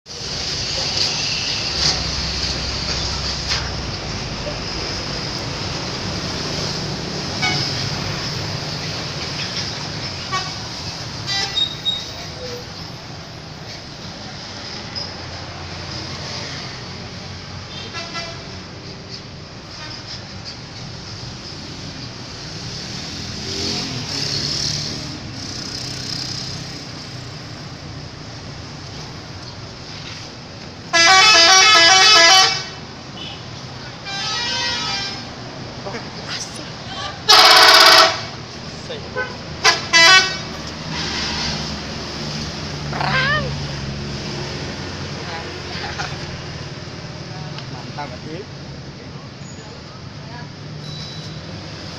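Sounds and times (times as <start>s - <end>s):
outdoor noise: 0.0s - 51.9s
bus engines rumbling and hissing: 0.1s - 51.9s
bus horn blast: 7.3s - 7.8s, 10.2s - 11.8s, 17.7s - 18.5s, 30.9s - 33.4s, 34.0s - 35.4s, 37.3s - 38.4s, 39.2s - 41.7s.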